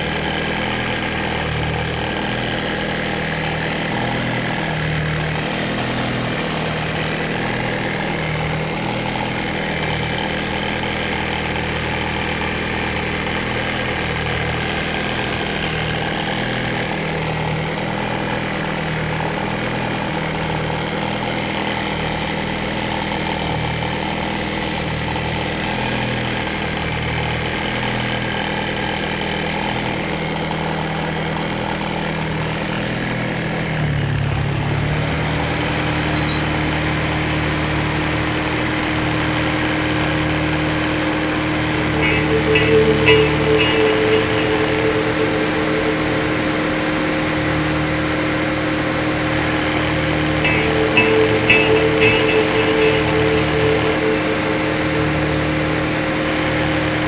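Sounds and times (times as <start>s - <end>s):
car engine idling: 41.6s - 57.0s.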